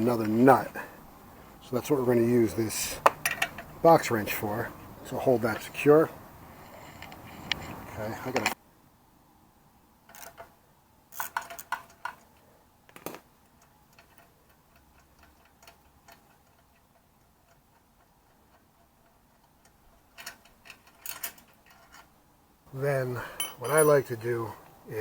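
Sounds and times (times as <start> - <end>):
metallic clicks of wrenches: 3.0 - 4.1, 11.1 - 22.1, 23.3 - 24.1.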